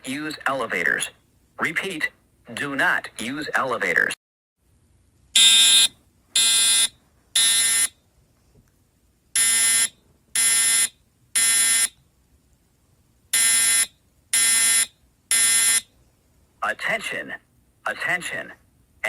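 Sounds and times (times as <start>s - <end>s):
fire alarm buzzy blasts: 5.4s - 7.9s, 9.4s - 11.9s, 13.3s - 15.9s.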